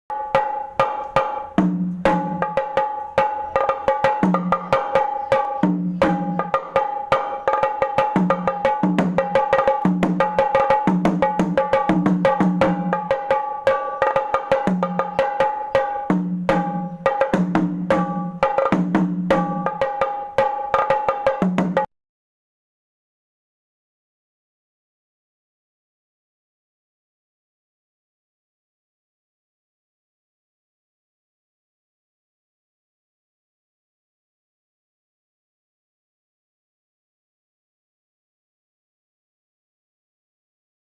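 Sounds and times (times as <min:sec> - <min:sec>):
fast traditional drumming: 0:00.3 - 0:21.9.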